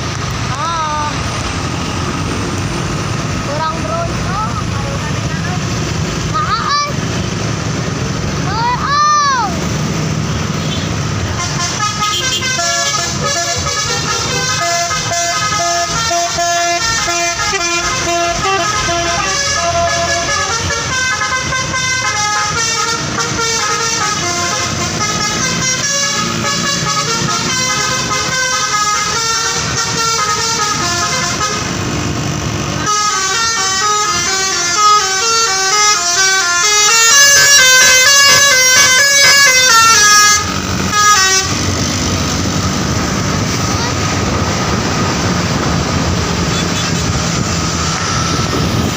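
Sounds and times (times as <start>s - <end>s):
bus horn playing a tune: 10.5s - 48.9s.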